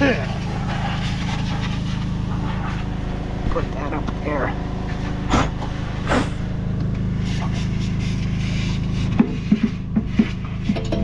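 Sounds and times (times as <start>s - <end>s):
engine running: 0.0s - 11.0s
sharp knocks and clatters: 9.1s - 11.0s.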